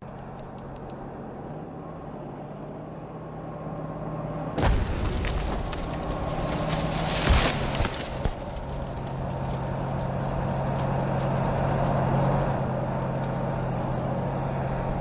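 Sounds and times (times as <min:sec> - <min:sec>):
rumbling noise: 0:04.6 - 0:15.0.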